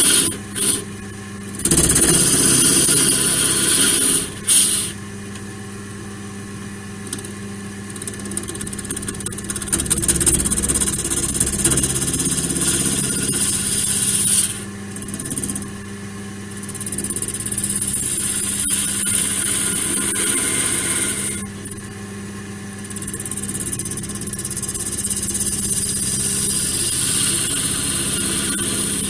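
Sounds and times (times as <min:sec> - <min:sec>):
wood lathe motor hum: 0:00.0 - 0:05.4, 0:07.9 - 0:15.6, 0:16.9 - 0:21.8, 0:23.0 - 0:29.0.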